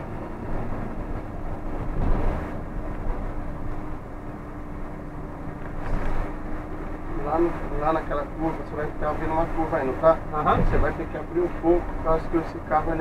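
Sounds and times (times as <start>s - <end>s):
engine and road rumble: 0.0s - 13.0s.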